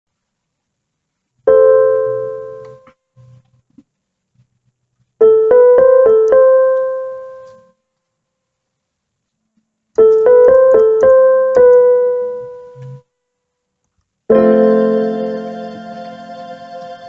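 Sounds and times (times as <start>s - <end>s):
piano-voiced keyboard chords: 1.5s - 2.9s, 5.2s - 7.7s, 10.0s - 13.0s, 14.3s - 17.0s.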